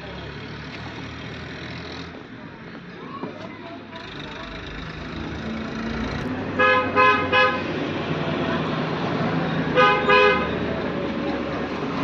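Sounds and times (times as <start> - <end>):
traffic hum: 0.0 - 12.0
vehicle horn honking: 6.5 - 7.8, 9.7 - 10.6.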